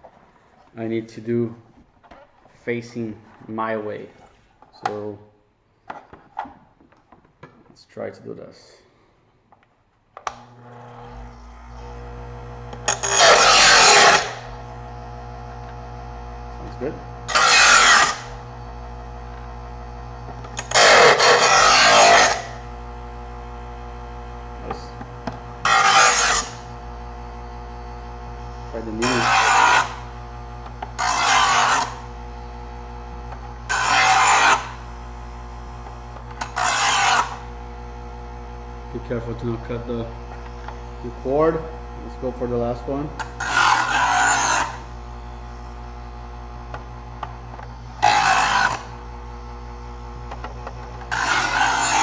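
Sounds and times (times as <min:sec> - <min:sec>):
electric motor humming: 0:10.3 - 0:52.0
knife grinding rasp: 0:12.8 - 0:14.6, 0:16.6 - 0:18.5, 0:20.5 - 0:22.7, 0:25.6 - 0:26.7, 0:28.7 - 0:30.1, 0:30.8 - 0:32.1, 0:33.7 - 0:34.8, 0:36.4 - 0:37.5, 0:43.2 - 0:44.9, 0:48.0 - 0:49.0, 0:50.9 - 0:52.0.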